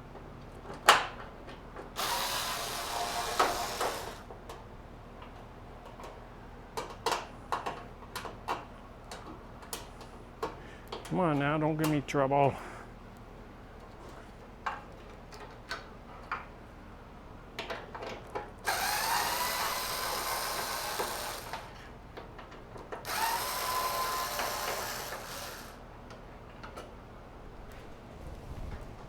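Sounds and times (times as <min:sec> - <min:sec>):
cordless driver motor whine: 0:02.0 - 0:04.2, 0:18.7 - 0:21.8, 0:23.0 - 0:25.8.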